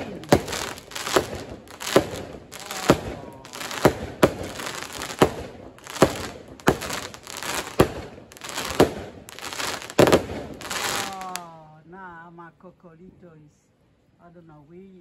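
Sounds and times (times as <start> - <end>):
firework bangs: 0.0 - 11.5
firecracker crackling: 0.0 - 11.6.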